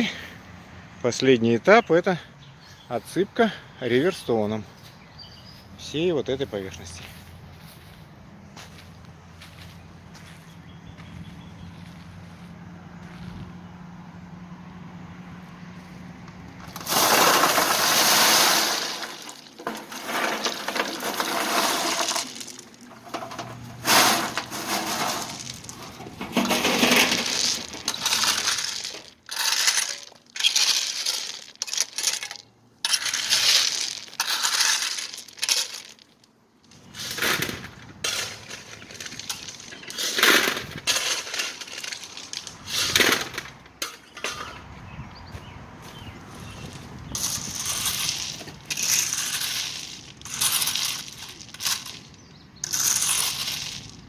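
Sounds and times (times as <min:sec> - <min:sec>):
stones clattering on ground: 0:16.6 - 0:36.1, 0:36.7 - 0:44.6.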